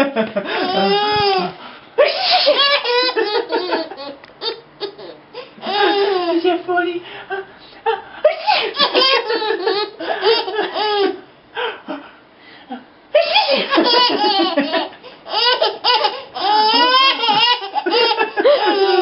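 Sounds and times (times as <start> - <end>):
baby belly-laughing: 0.5 - 6.4, 8.3 - 11.2, 13.2 - 19.0.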